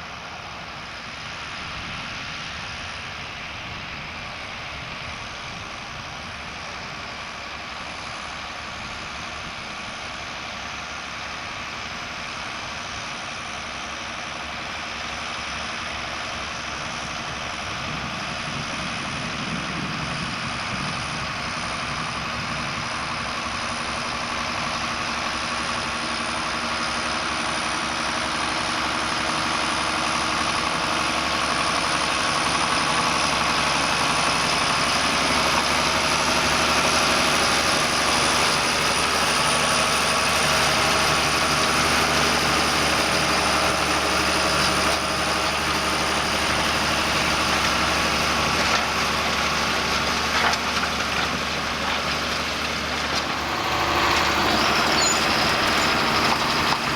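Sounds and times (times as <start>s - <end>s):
tractor diesel engine under load: 0.0s - 56.9s
thin high whistle: 54.8s - 56.0s.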